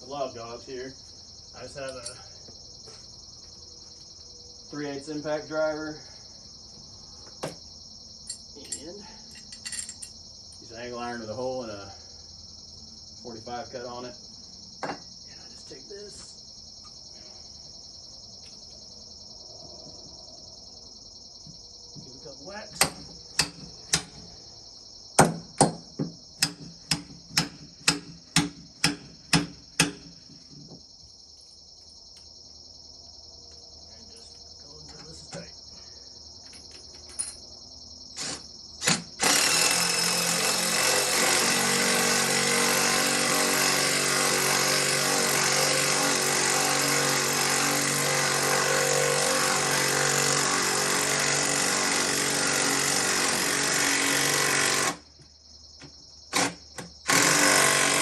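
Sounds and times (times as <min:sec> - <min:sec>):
crickets chirping: 0:00.0 - 0:58.0
impact driver hammering: 0:22.8 - 0:24.2, 0:25.2 - 0:30.1, 0:56.3 - 0:58.0.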